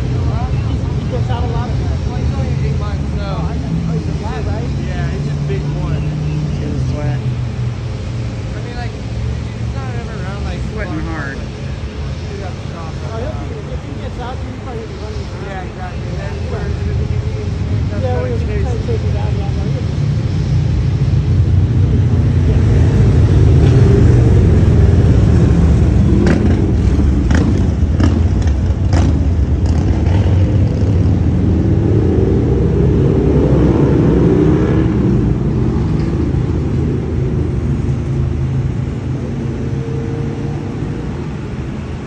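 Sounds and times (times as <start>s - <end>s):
engine note rising and falling: 0.0s - 42.0s
road traffic rumble: 0.0s - 42.0s.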